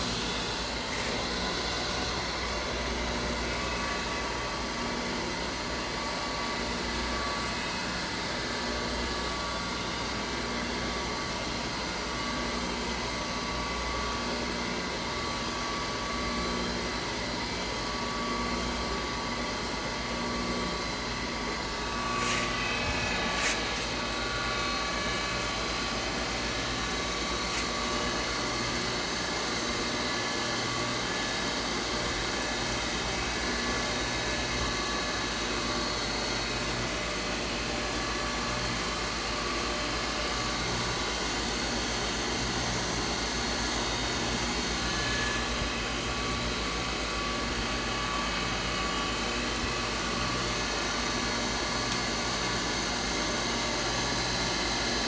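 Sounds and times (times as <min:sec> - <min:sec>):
grinder motor humming: 0:00.0 - 0:54.9.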